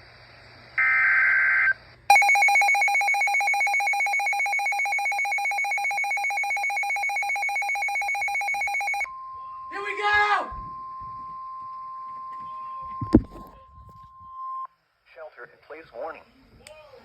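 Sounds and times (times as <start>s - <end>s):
warbling two-tone alert signal: 2.1s - 9.1s.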